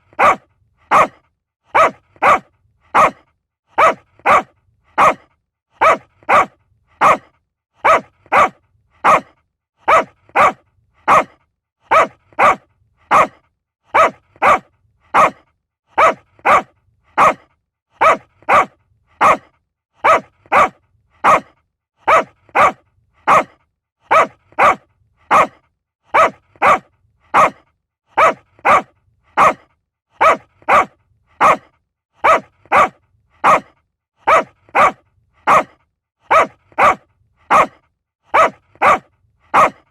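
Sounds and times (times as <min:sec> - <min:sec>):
small dog barking: 0:00.1 - 0:39.9.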